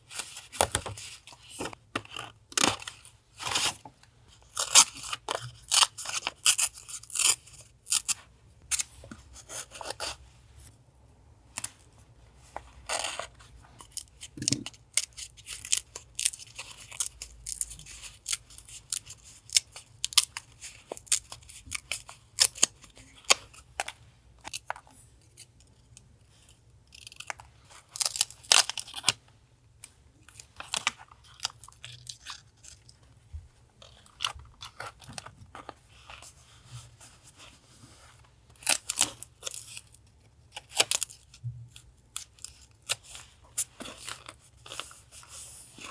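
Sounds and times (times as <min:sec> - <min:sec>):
scissors snipping paper: 0:12.9 - 0:23.5
low refrigerator hum: 0:20.7 - 0:45.9.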